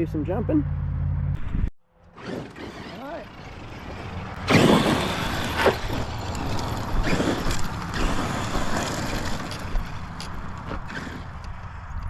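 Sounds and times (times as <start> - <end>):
electric toy truck motor: 2.0 - 11.6.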